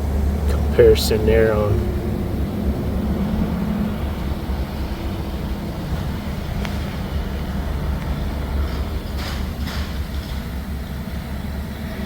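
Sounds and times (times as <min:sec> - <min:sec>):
low rumbling hum: 0:00.0 - 0:12.0.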